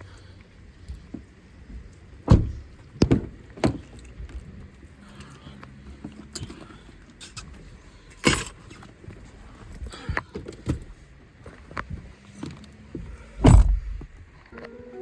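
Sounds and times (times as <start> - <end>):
clicks and knocks inside car: 0.8 - 4.9, 5.6 - 14.4
car door shutting: 2.2 - 3.9, 13.0 - 14.8.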